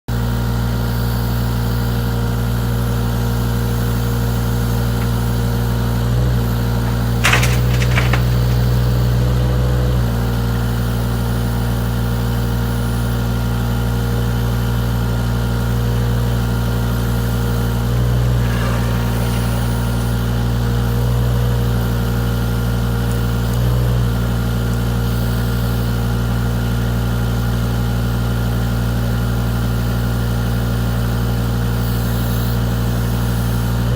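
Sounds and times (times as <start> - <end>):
loader diesel engine running: 1.6 - 11.6, 13.9 - 26.0
sharp clatter: 4.3 - 10.1, 17.1 - 21.3.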